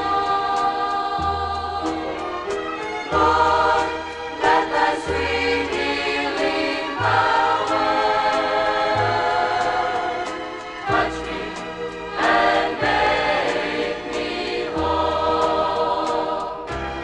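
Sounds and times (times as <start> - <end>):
choir singing gospel: 0.0 - 17.0
instrumental accompaniment: 0.0 - 17.0.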